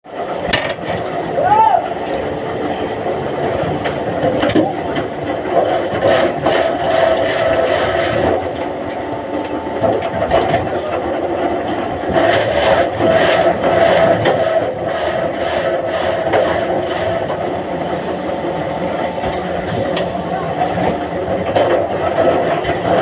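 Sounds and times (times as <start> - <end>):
heavy machinery engine running: 0.0 - 23.0
logs scraping and knocking: 3.5 - 23.0.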